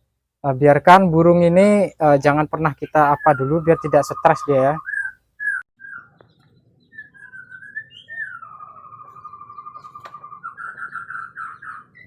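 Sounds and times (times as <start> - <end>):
bird singing whistled phrases: 2.8 - 12.0.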